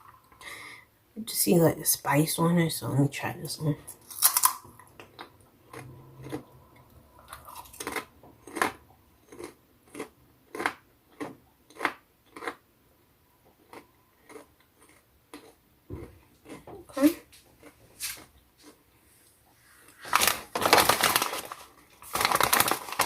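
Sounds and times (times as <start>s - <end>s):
person chewing crunchy chip: 3.9s - 12.6s, 13.6s - 16.7s, 17.3s - 18.9s.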